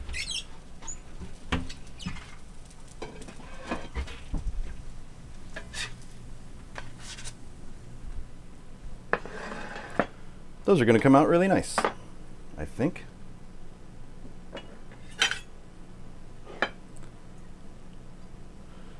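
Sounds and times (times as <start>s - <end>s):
faint sizzle of frying fat: 0.0s - 18.9s
metal spatula scraping a pan: 3.0s - 4.1s, 5.6s - 6.0s, 6.8s - 7.4s, 9.1s - 10.1s.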